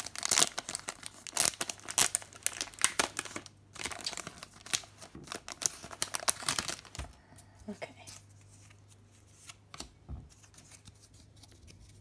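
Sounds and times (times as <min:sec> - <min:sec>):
foil wrapper tearing and crinkling: 0:00.0 - 0:07.1.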